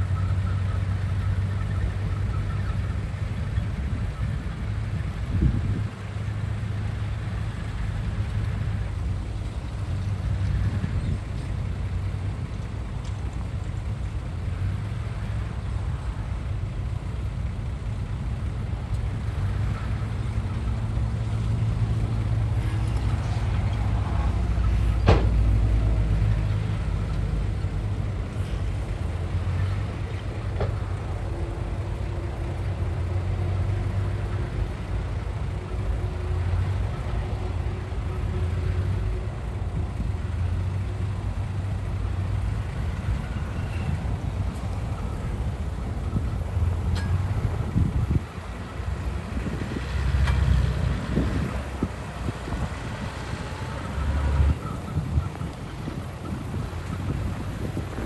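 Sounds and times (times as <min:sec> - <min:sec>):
diesel machinery droning: 0:00.0 - 0:58.0.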